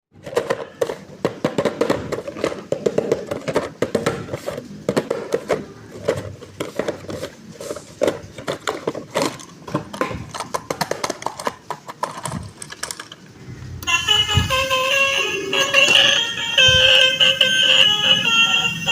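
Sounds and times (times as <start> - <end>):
plastic packaging clicks and crinkles: 0.2 - 13.2
toy electronic horn: 13.8 - 18.9.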